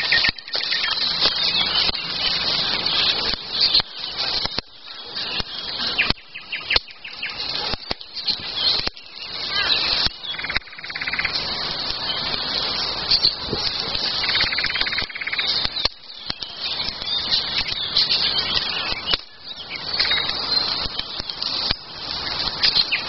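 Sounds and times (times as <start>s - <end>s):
songbirds chirping: 0.0s - 23.0s
sharp snaps and clicks: 5.4s - 12.0s, 13.1s - 23.0s.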